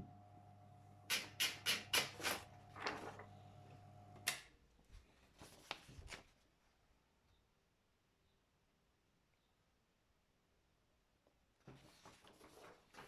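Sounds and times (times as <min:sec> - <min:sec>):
typewriter motor humming: 0:01.0 - 0:04.4
typewriter key strikes: 0:01.1 - 0:02.4.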